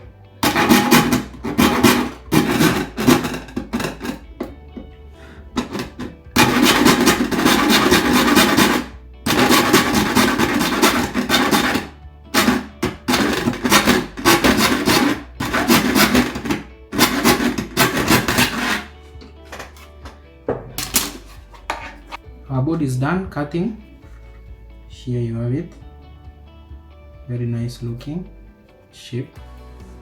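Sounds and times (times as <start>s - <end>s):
rasping cutting strokes: 0.4s - 4.2s, 5.6s - 19.0s.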